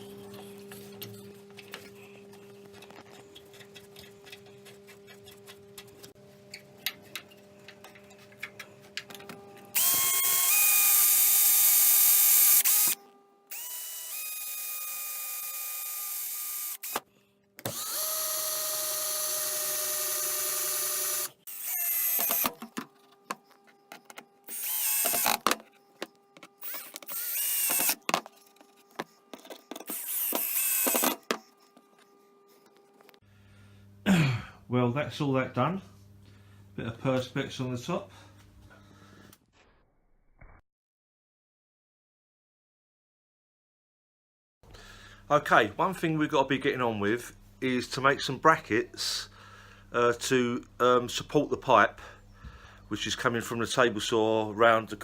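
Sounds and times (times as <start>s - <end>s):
electric drill running: 9.7s - 17.0s, 17.6s - 22.6s, 24.5s - 25.5s, 26.6s - 28.1s, 29.8s - 31.4s
faint steady hum: 31.3s - 39.4s.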